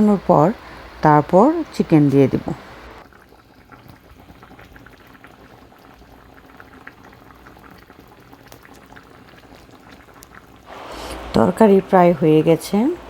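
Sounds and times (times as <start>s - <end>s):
curry bubbling in a pot: 3.0s - 13.0s.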